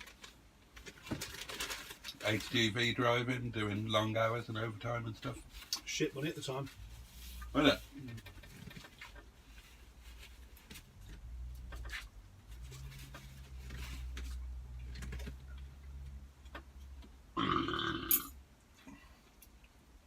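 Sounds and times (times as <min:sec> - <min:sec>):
loud burp: 0:17.4 - 0:18.4.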